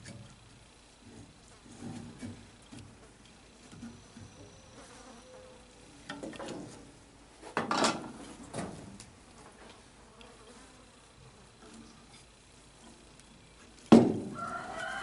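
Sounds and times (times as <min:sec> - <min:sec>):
fly buzzing: 0:04.0 - 0:05.9, 0:10.0 - 0:12.4.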